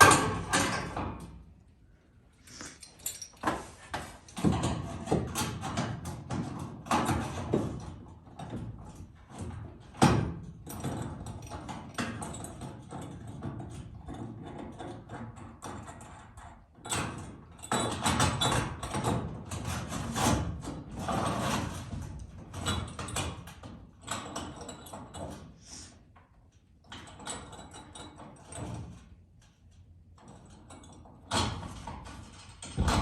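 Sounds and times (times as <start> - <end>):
sliding door scraping and rumbling: 32.6 - 33.0.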